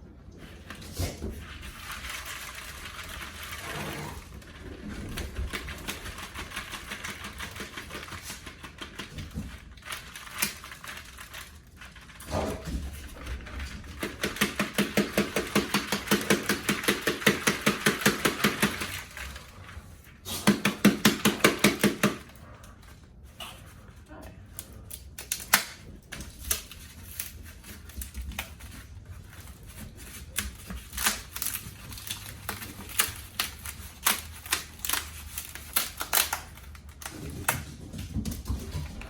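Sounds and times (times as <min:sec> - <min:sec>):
dry gourd skin crackling: 0:26.4 - 0:37.3.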